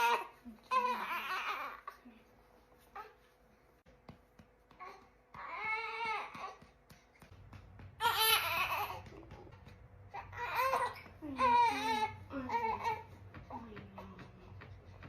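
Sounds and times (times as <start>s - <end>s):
soft taps: 3.9s - 11.2s
baby babbling and whimpering: 10.1s - 13.6s.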